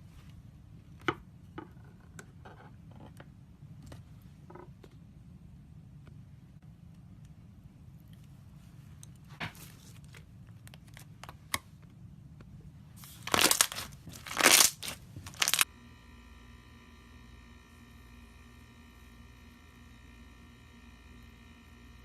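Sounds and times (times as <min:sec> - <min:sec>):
slime squishing: 0:13.0 - 0:15.6
slime popping: 0:13.2 - 0:15.6.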